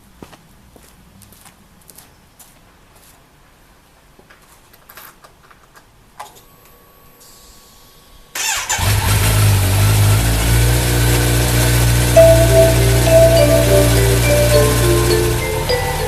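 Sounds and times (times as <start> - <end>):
motorcycle engine starting and idling: 8.4 - 15.0.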